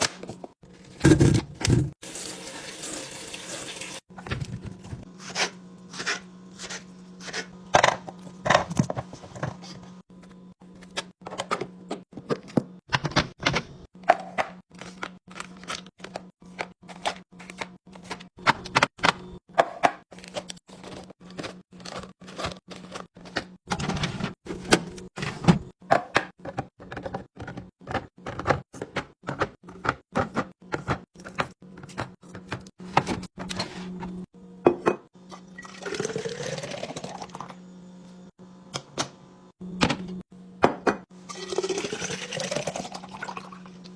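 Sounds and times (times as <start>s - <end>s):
liquid pouring into container: 41.3s - 43.6s.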